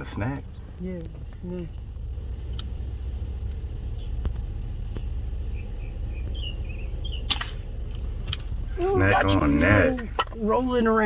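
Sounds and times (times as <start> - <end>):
low vehicle rumble: 0.0 - 11.0
sharp click: 7.3 - 7.6.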